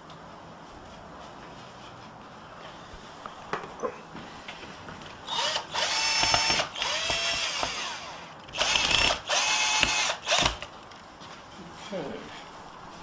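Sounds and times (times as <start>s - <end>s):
cordless drill whining: 5.2s - 10.7s.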